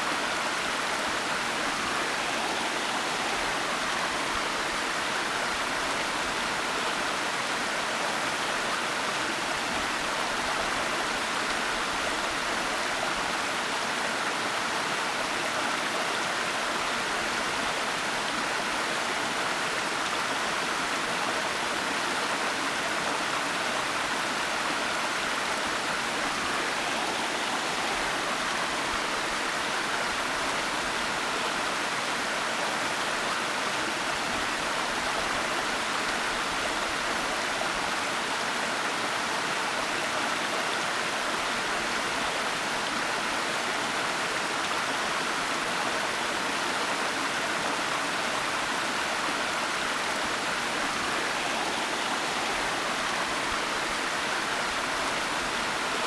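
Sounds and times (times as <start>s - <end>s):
waterfall rushing: 0.0s - 4.7s, 25.6s - 30.3s, 47.3s - 56.0s.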